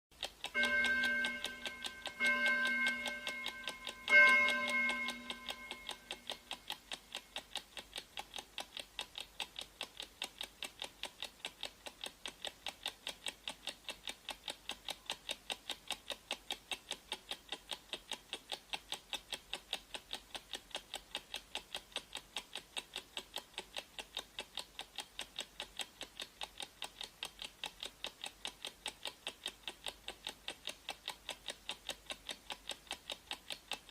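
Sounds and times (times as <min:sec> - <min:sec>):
clock ticking sound effect: 0:00.1 - 0:33.9
ringing tones: 0:00.6 - 0:06.4.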